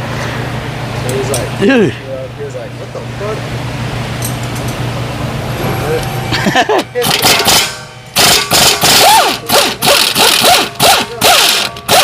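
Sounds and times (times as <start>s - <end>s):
impact wrench bursts: 7.0s - 12.0s.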